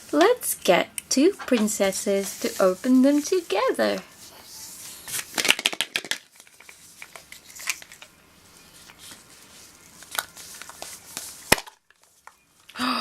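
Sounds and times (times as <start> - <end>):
plastic clicks and rustling: 5.2 - 8.1, 9.9 - 12.8.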